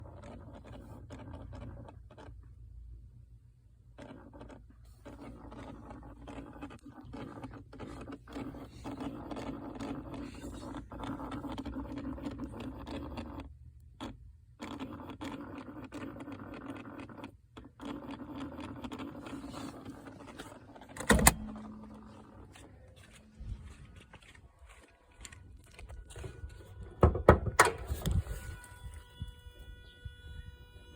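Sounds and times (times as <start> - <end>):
car scratching noise: 3.9 - 26.8.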